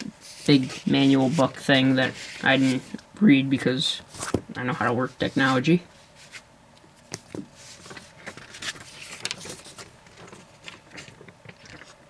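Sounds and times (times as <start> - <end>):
packaging rustling and clicking: 7.1 - 12.0.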